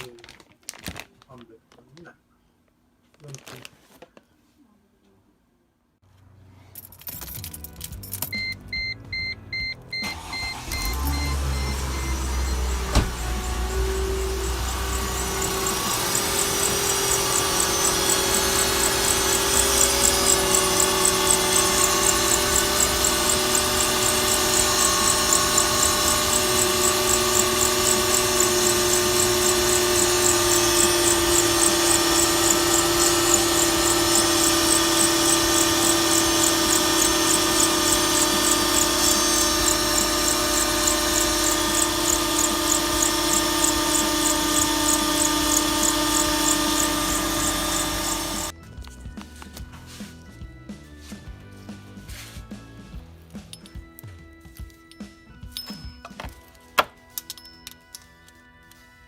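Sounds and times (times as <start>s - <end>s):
engine whine: 10.0s - 48.6s.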